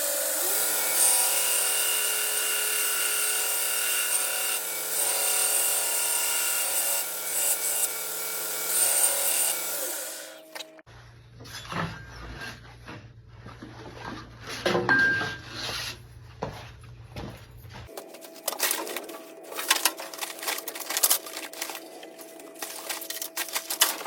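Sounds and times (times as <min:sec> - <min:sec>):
belt grinder grinding brass: 0:00.0 - 0:10.7, 0:18.0 - 0:24.0.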